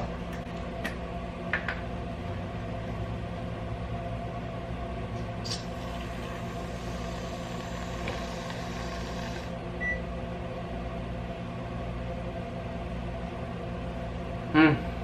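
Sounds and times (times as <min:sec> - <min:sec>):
microwave oven hum: 0:00.0 - 0:15.0
microwave hiss: 0:05.4 - 0:10.0.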